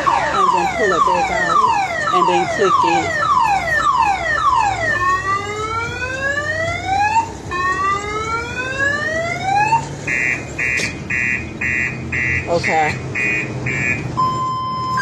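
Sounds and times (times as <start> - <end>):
car alarm siren: 0.0 - 15.0.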